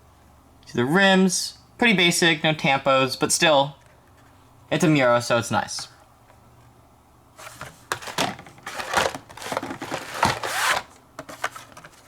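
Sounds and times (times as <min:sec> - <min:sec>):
plastic and cardboard packaging crinkling: 0:07.4 - 0:12.0.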